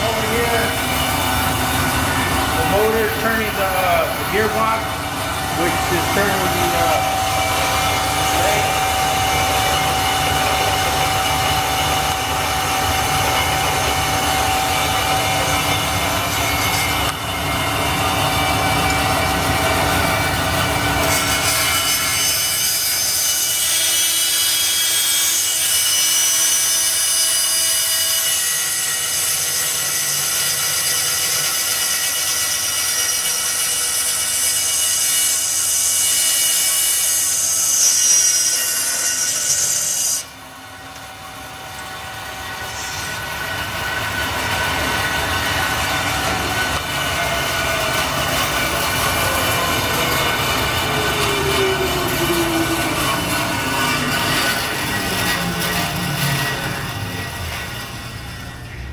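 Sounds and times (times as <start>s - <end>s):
machine hum: 0.0s - 21.6s, 40.2s - 58.9s
band saw motor whine: 0.0s - 58.9s
saw blade hissing through metal: 42.6s - 43.5s.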